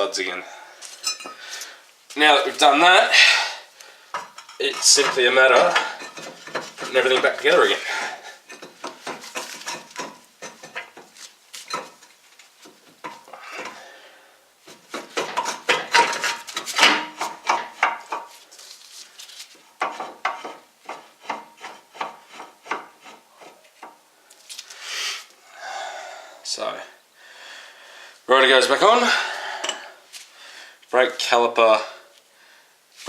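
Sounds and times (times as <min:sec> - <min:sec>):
metal parts clinking and scraping: 0:01.0 - 0:01.4, 0:04.2 - 0:07.8, 0:08.4 - 0:12.2, 0:14.9 - 0:18.3.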